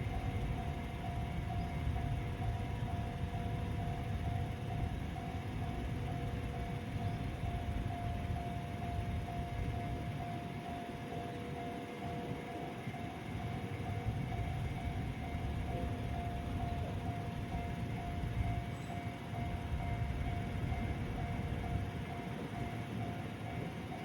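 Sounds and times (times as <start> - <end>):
electronic crossing bell dinging: 0.0 - 24.0.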